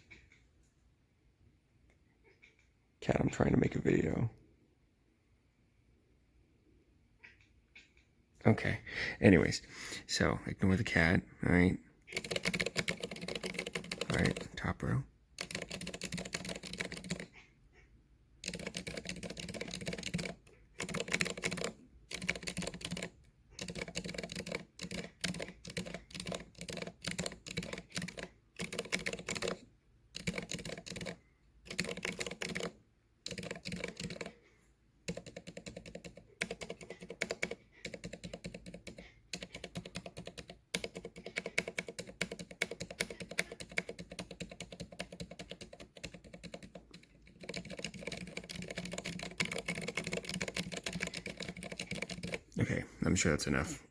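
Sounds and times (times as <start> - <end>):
keyboard typing: 11.0 - 17.4, 18.4 - 52.6.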